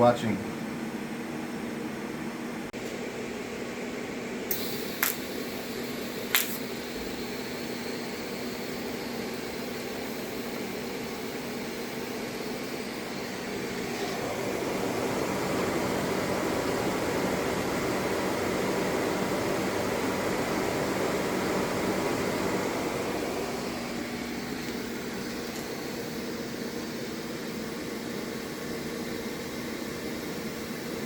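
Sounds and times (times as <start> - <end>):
machine hum: 0.0 - 31.0
sharp clicks: 6.3 - 6.6.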